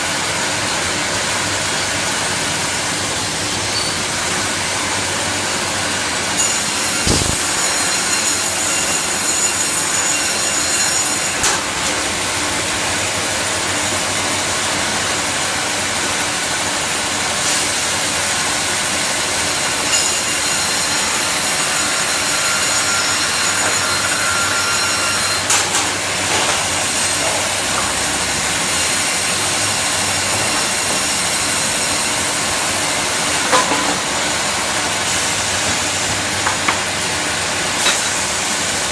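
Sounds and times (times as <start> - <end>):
sawmill machine noise: 0.0 - 38.9
high thin whine: 6.7 - 8.0.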